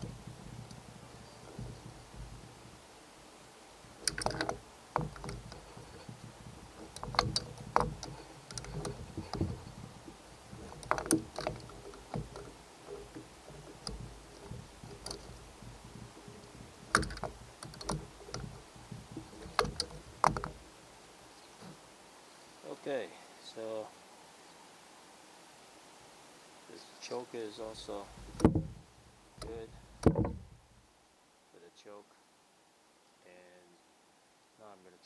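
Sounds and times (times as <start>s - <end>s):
tools clicking and knocking on metal: 4.0s - 20.7s.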